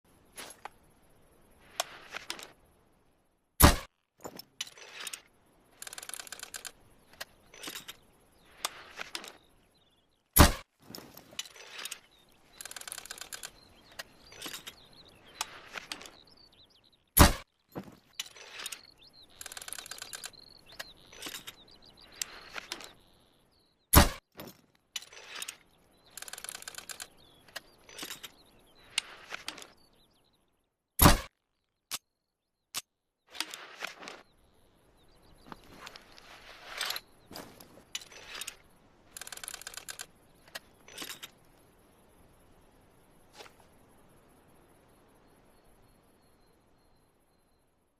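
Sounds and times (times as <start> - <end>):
crossbow cocking clicks and rattles: 4.4 - 8.0, 11.3 - 16.2, 25.0 - 29.8, 37.9 - 41.5.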